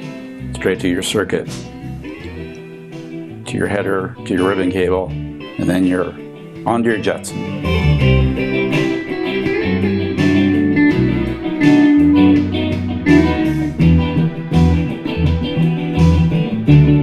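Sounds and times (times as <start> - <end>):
guitar-led instrumental music: 0.0 - 17.0.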